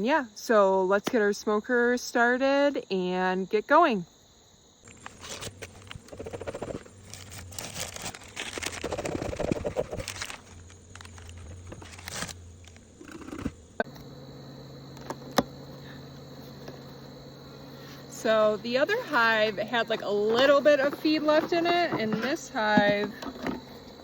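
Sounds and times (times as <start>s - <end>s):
fuel crumpling and crackling: 4.9s - 14.1s.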